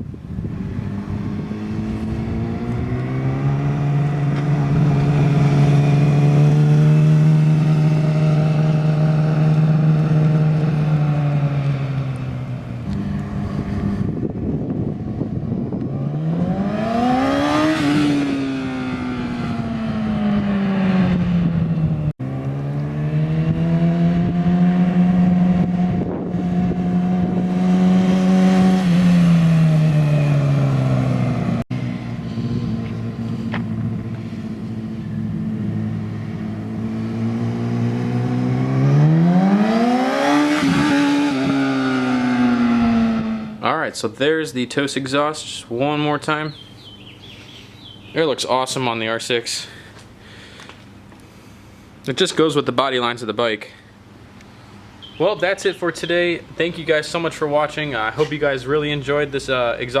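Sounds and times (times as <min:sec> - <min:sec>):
motorcycle engine revving: 0:00.0 - 0:43.8
motorcycle passing by: 0:00.4 - 0:43.7.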